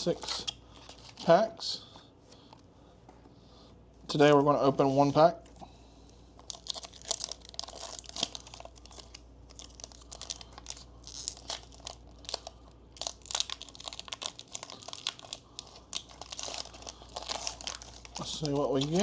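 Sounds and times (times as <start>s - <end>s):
foil wrapper crinkling and tearing: 6.4s - 19.0s.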